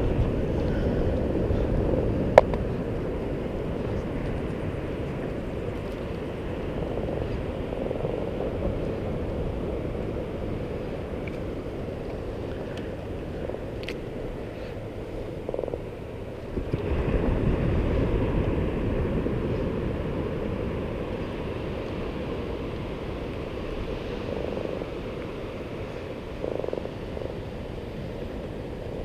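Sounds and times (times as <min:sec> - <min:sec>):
surf rushing: 0:00.0 - 0:29.0
wind on microphone: 0:00.0 - 0:29.0.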